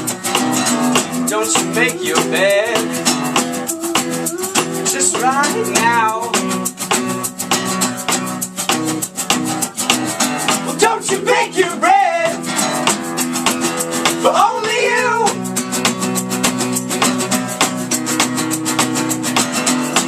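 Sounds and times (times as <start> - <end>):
person singing: 0.0 - 6.9, 10.7 - 12.4, 14.2 - 15.4
guitar strummed fast: 0.0 - 20.0.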